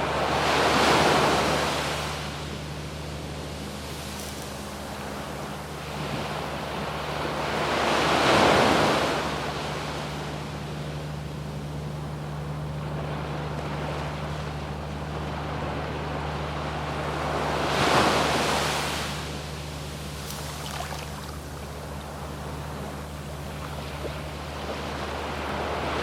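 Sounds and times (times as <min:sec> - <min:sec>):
surf washing onto sandy beach: 0:00.0 - 0:02.5, 0:17.0 - 0:26.0
wave breaking: 0:12.7 - 0:26.0.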